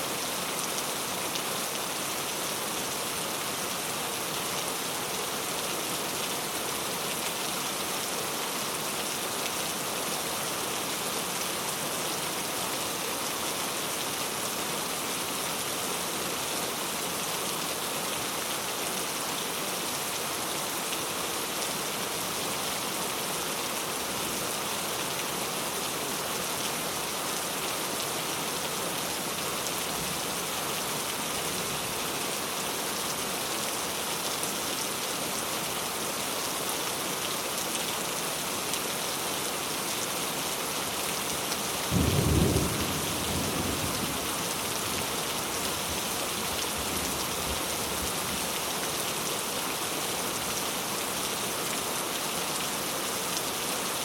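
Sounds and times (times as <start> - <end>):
rain pattering: 41.3 - 48.8.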